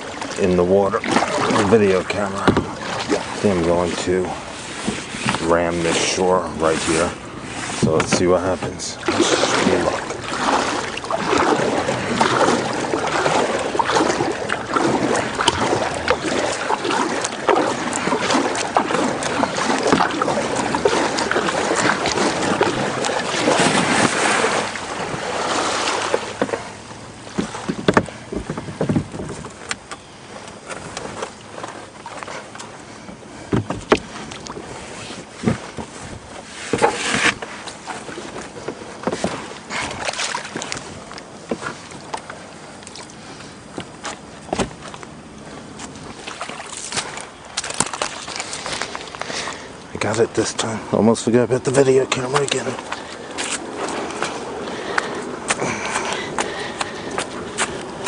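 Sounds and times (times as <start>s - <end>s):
kayak hull scraping onto riverbank: 0.0s - 58.0s
knocks against kayak hull: 2.4s - 3.2s, 27.3s - 29.6s, 33.5s - 34.1s, 44.5s - 44.8s.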